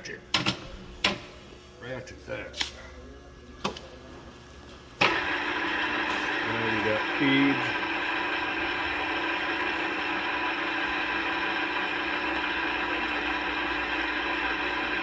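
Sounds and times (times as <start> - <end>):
drill press motor droning: 4.6 - 15.0.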